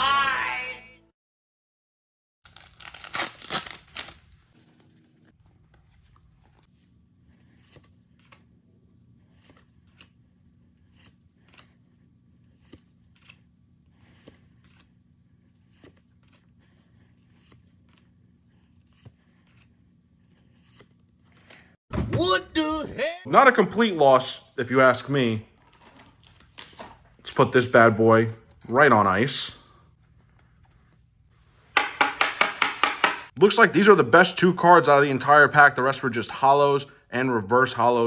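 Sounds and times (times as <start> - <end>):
foil wrapper tearing open: 2.4 - 4.5.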